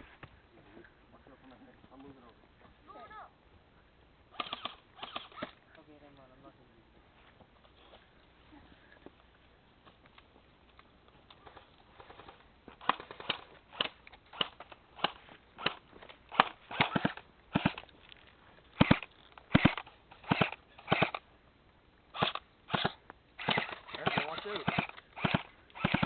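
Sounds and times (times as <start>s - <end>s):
airsoft gun shots: 4.3s - 5.6s, 12.8s - 17.8s, 18.8s - 21.2s, 22.2s - 26.0s.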